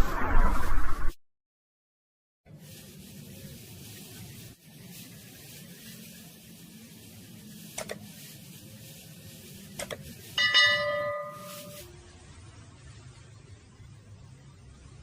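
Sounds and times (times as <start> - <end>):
ringing metallic strike: 10.4 - 11.8.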